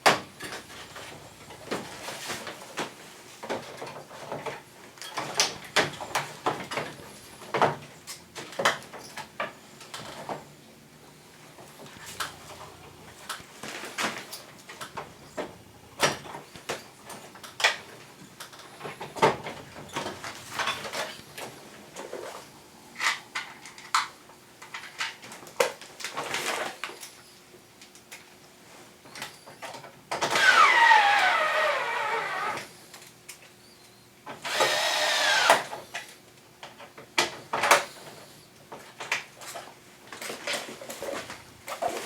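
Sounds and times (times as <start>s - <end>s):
cordless power screwdriver running: 30.3s - 32.7s, 34.5s - 35.7s.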